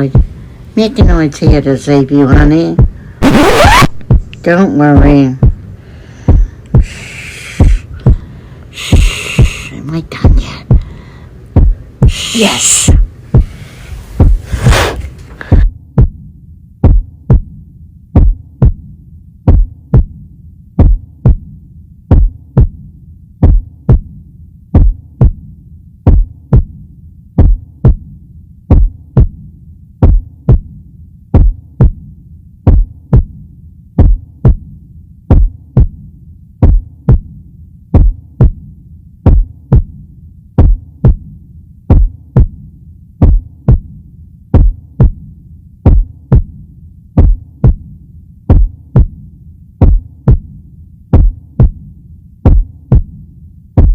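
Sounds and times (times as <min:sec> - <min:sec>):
heartbeat thumps: 0:00.0 - 0:53.9
low steady hum: 0:00.0 - 0:53.9
long shushing hiss: 0:06.9 - 0:07.8, 0:08.7 - 0:09.8.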